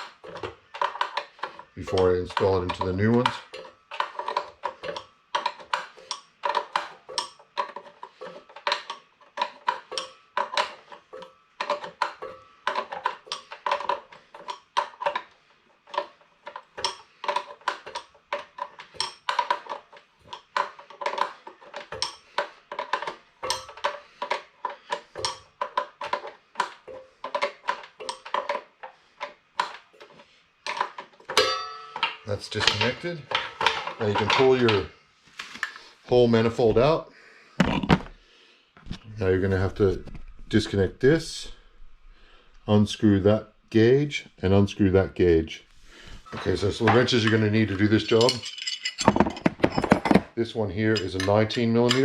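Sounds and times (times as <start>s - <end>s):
metal tools clinking on metal: 0.0s - 15.3s, 30.7s - 34.9s, 46.3s - 52.0s.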